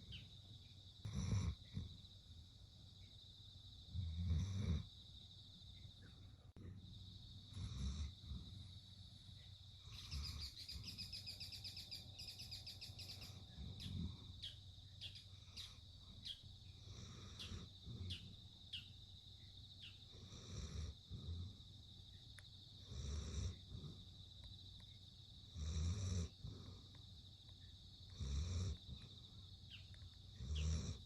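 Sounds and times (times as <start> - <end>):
puppy snoring softly: 1.0 - 2.0, 3.9 - 4.9, 6.6 - 8.7, 16.8 - 18.3, 20.0 - 21.7, 22.8 - 24.2, 25.5 - 27.0, 28.1 - 29.2, 30.4 - 31.0.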